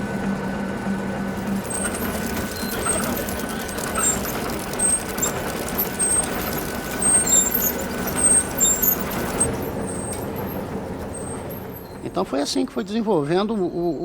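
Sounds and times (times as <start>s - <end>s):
rumble of passing vehicles: 0.0s - 12.2s
short high squeals: 1.6s - 12.1s.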